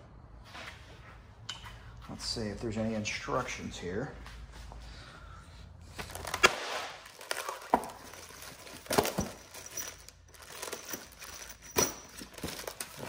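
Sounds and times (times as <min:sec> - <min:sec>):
packaging rustling: 0:06.0 - 0:13.0.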